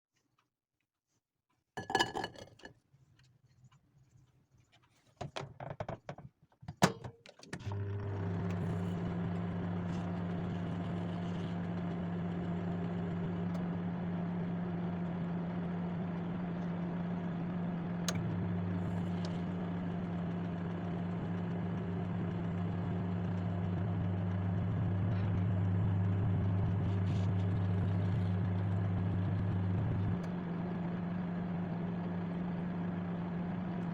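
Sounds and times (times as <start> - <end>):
microwave oven humming: 7.6 - 33.9.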